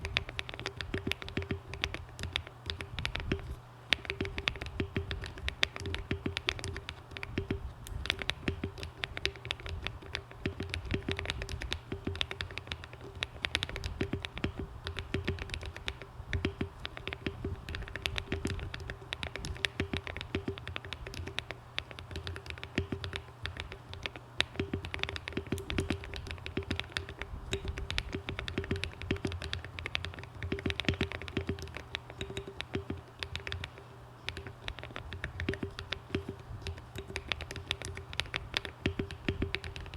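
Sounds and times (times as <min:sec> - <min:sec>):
faint steady hum: 0:00.0 - 0:39.9
fast mechanical keyboard typing: 0:00.0 - 0:39.9.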